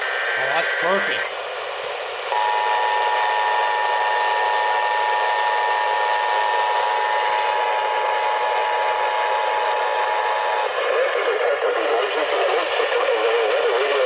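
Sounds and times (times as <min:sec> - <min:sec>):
two-tone alarm over radio: 0:02.4 - 0:10.9.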